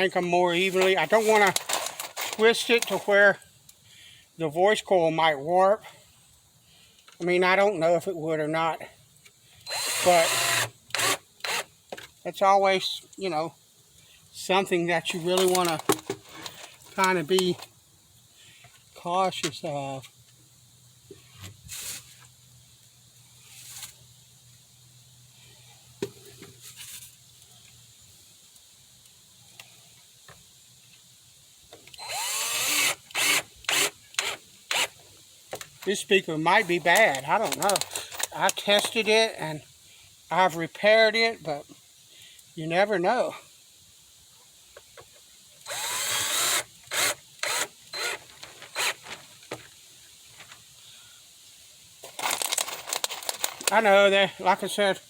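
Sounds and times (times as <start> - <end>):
power drill driving screws: 9.7 - 11.7, 32.0 - 34.9, 45.6 - 49.1.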